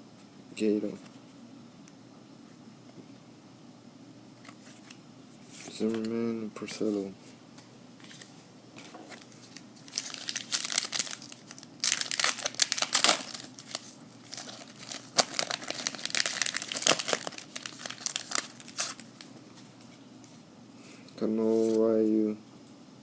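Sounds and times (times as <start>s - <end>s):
wrapper tearing and crinkling: 9.2s - 19.3s.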